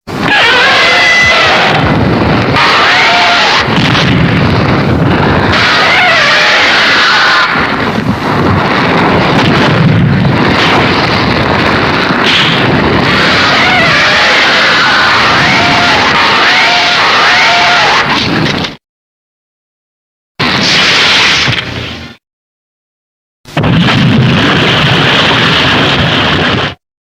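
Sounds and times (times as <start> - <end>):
monster roar with warbling cries: 0.1 - 18.2.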